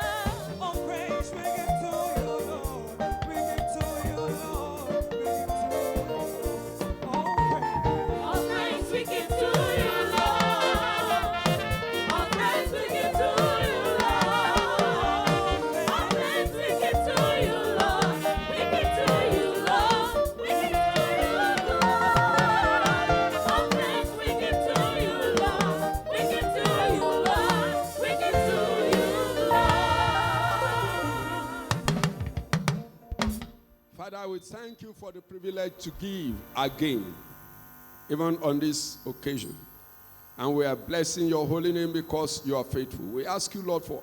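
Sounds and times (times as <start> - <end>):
gospel singing with vibrato: 0.0 - 32.7
keyboard and drums: 0.0 - 33.8.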